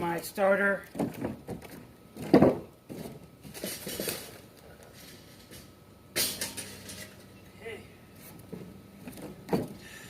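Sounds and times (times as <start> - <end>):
objects rustling and clattering: 0.8 - 7.4.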